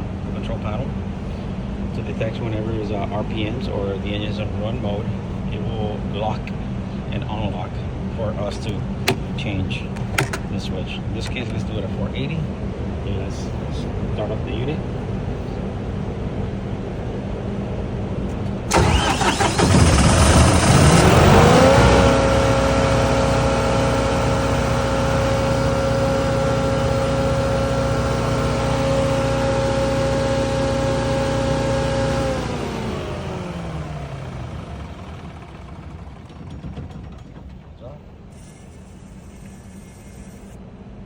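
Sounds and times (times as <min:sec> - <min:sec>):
steady hum: 0:00.0 - 0:20.7, 0:22.0 - 0:35.4
engine starting and winding down: 0:18.7 - 0:40.6.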